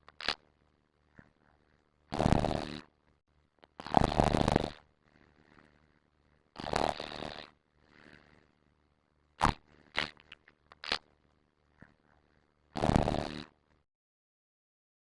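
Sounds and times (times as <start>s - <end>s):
faint breaths: 1.0s - 2.1s, 4.8s - 6.6s, 7.6s - 9.0s, 11.7s - 12.7s
person snoring: 2.1s - 2.9s, 3.8s - 5.9s, 6.6s - 8.5s, 12.8s - 13.6s.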